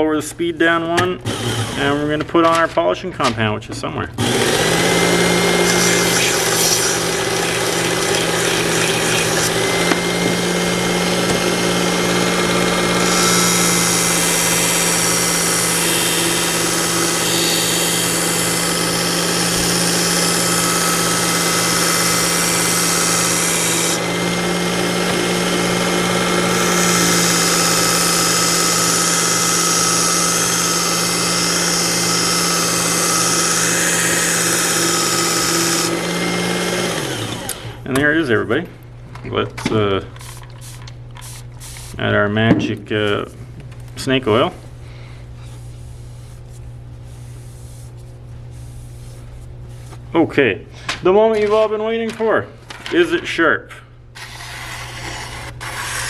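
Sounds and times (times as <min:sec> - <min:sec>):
knife sharpener motor hum: 0:04.2 - 0:37.8, 0:54.2 - 0:56.0.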